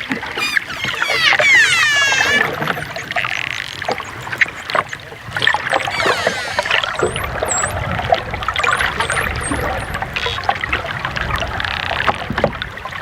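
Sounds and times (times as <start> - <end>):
dolphin whistle gliding in pitch: 0.4 - 5.0, 5.6 - 7.8, 8.6 - 10.0.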